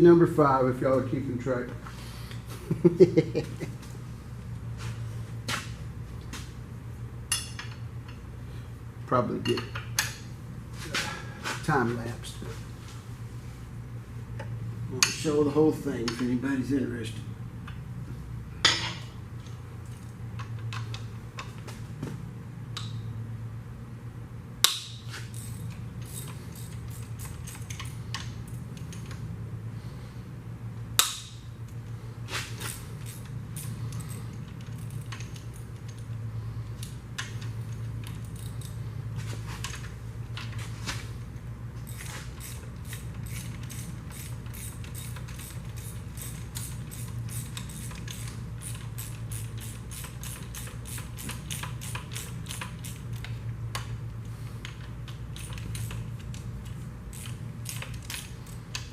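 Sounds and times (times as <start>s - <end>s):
steady low hum: 0.0s - 58.9s.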